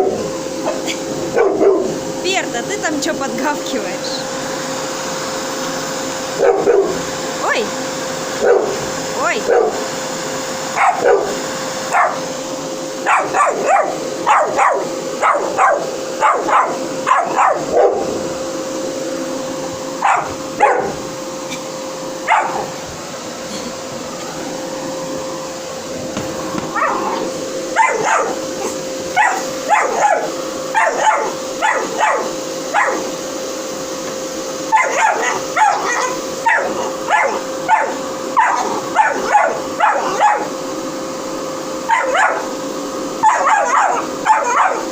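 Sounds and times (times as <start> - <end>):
dog barking and yelping: 0.0 - 2.0, 6.3 - 7.0, 8.4 - 9.9, 10.6 - 12.3, 13.0 - 18.2, 19.9 - 21.1, 22.2 - 22.8, 26.6 - 33.2, 34.7 - 40.6, 41.8 - 42.6, 43.2 - 44.9
vacuum cleaner humming: 0.0 - 44.9.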